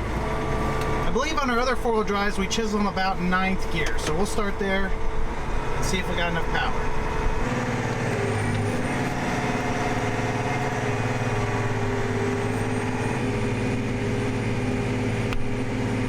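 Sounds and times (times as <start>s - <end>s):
tractor diesel engine running: 0.0s - 16.0s.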